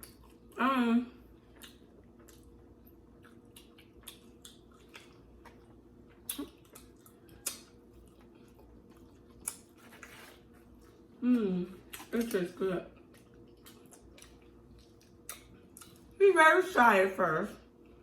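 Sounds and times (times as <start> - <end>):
mouth clicks and smacks chewing: 1.5 - 2.6, 3.2 - 10.3, 11.8 - 12.4, 13.0 - 16.1.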